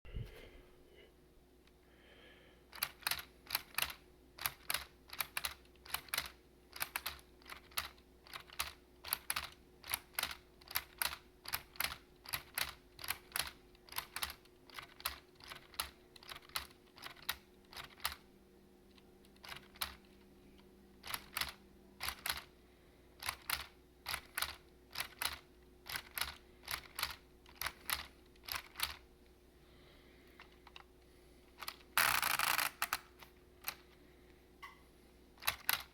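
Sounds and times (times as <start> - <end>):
plastic typewriter keys clacking: 2.8 - 18.2, 19.4 - 20.0, 21.0 - 22.4, 23.2 - 29.0, 35.4 - 35.9.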